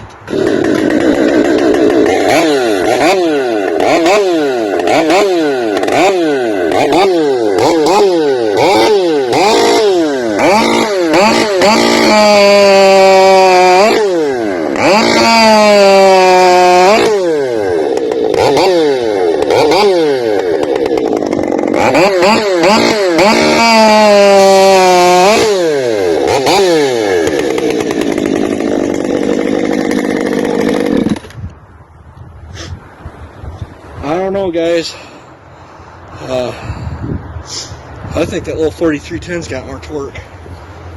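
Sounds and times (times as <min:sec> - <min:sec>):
chainsaw revving and cutting: 0:00.0 - 0:31.4.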